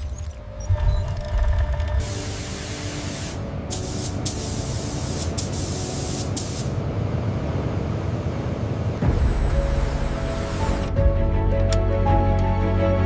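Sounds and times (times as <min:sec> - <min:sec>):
music: 0:00.0 - 0:07.8, 0:09.0 - 0:13.0
spray hissing in spurts: 0:02.0 - 0:06.7.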